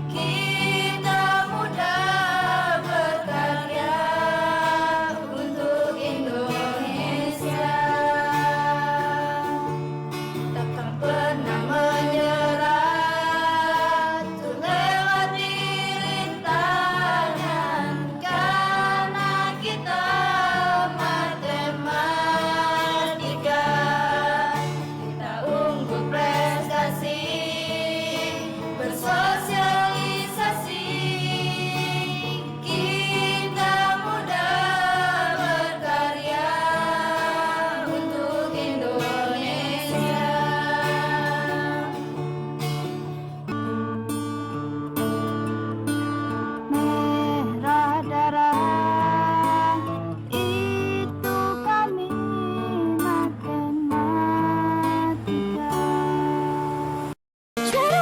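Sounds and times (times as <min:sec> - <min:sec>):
song with sung vocals: 0:00.0 - 0:42.4.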